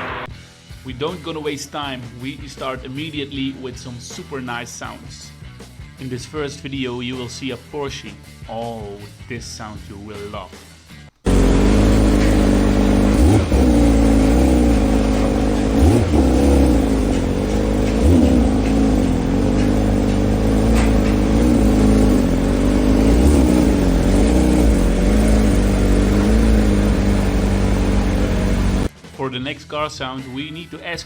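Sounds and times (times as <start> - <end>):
car engine and exhaust revving: 11.3 - 28.9.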